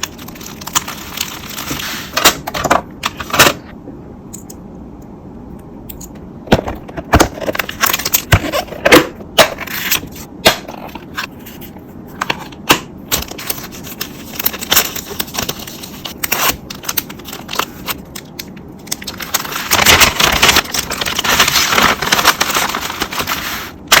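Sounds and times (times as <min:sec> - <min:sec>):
packaging crinkling: 0:00.0 - 0:02.2, 0:13.2 - 0:24.0.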